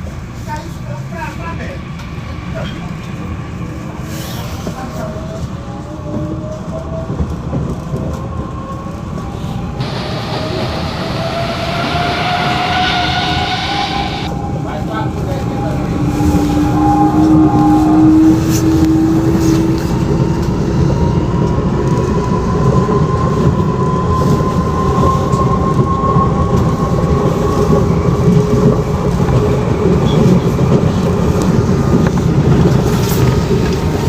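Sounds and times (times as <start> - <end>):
rumble of train wheels: 0.0 - 34.0
high whine rising in pitch: 9.8 - 20.2
electric train motors humming: 9.8 - 20.6.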